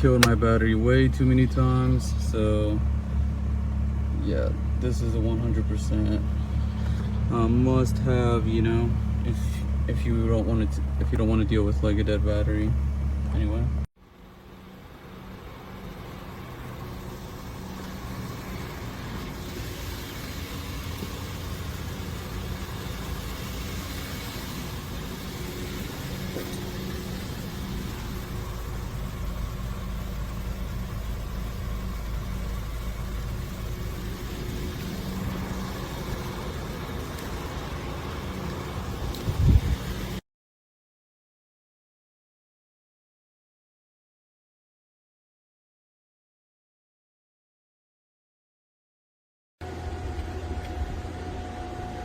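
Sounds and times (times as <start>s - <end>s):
car engine humming: 0.0s - 40.2s, 49.6s - 52.0s.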